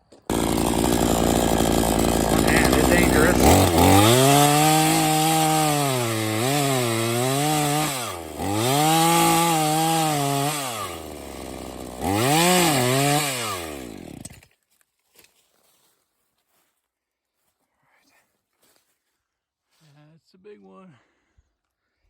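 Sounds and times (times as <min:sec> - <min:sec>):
chainsaw cutting wood: 0:00.0 - 0:14.5.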